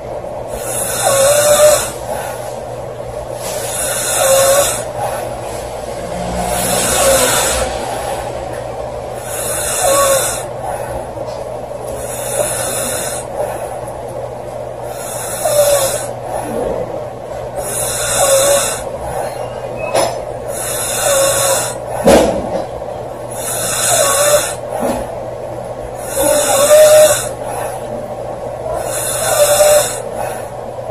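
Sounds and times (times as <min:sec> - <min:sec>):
woman snoring loudly: 0:00.5 - 0:02.4, 0:03.6 - 0:08.6, 0:09.2 - 0:11.0, 0:11.9 - 0:13.7, 0:14.8 - 0:16.6, 0:17.6 - 0:19.4, 0:20.5 - 0:22.1, 0:23.3 - 0:25.0, 0:26.0 - 0:27.9, 0:28.6 - 0:30.4.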